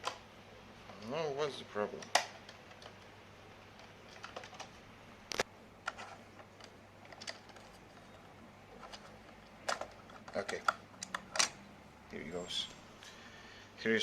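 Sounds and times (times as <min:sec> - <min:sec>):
plastic parts clicking and knocking: 0:02.0 - 0:03.1, 0:03.7 - 0:11.6.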